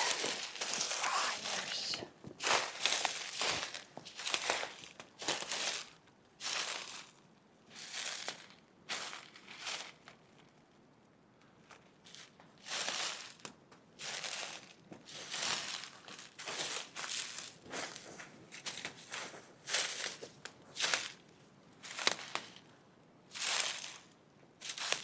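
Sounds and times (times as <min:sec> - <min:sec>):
footsteps crunching through dry leaves: 0:02.4 - 0:05.9, 0:06.5 - 0:07.1, 0:14.2 - 0:18.0.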